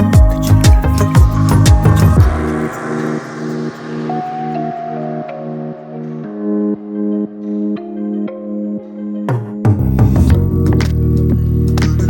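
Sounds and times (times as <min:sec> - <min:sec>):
high sustained synth note: 0:00.0 - 0:07.2
ambient electronic synth chords: 0:00.0 - 0:12.0.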